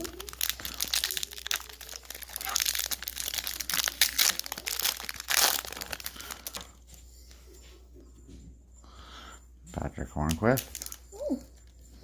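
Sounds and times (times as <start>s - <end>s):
wrapper being torn and crinkled: 0.0s - 6.7s, 10.6s - 11.7s.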